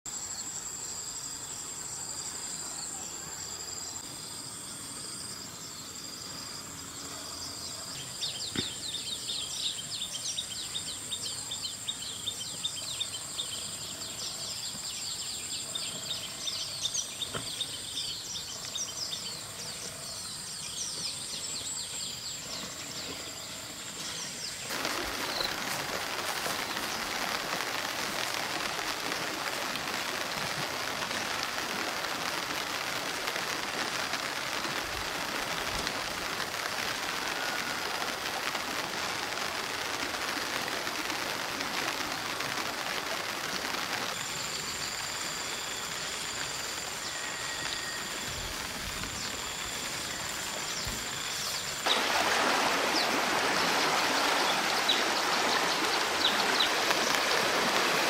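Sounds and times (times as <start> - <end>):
rain hissing: 0.0 - 58.0
high insect drone: 0.1 - 58.0
small birds chirping: 7.7 - 28.3.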